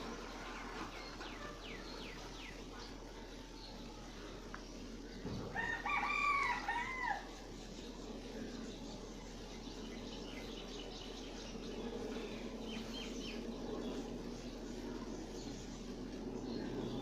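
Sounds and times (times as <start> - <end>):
steady background noise: 0.0 - 17.0
rooster crowing: 5.5 - 7.3.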